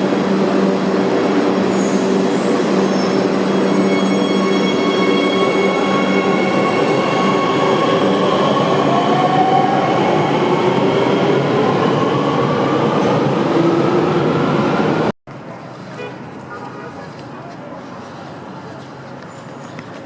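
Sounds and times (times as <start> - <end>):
metro train rumbling: 0.0 - 19.2
train whining tones: 0.7 - 14.8.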